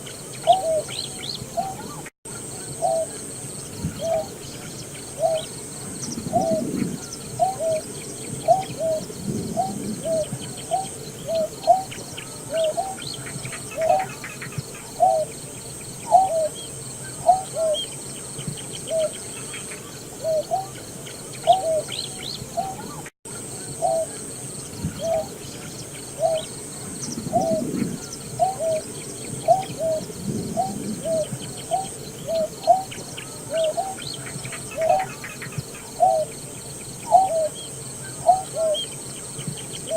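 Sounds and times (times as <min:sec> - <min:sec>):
bird low hooting notes: 0:00.0 - 0:39.9.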